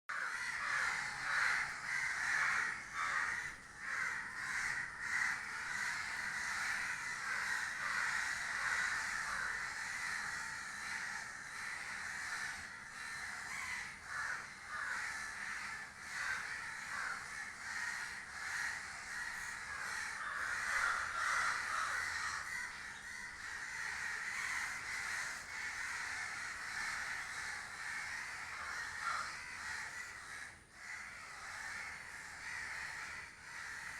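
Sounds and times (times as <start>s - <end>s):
crows cawing: 0.1s - 33.9s.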